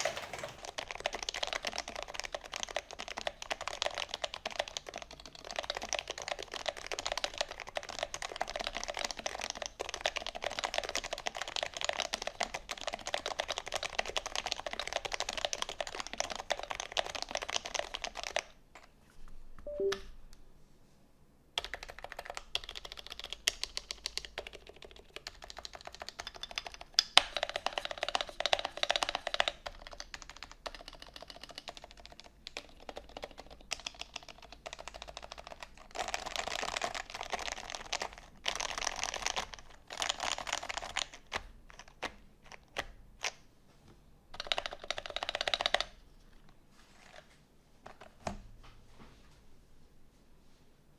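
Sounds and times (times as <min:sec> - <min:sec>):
typing on keyboard: 0:00.0 - 0:18.9, 0:19.7 - 0:20.0, 0:21.6 - 0:43.4, 0:44.3 - 0:46.1.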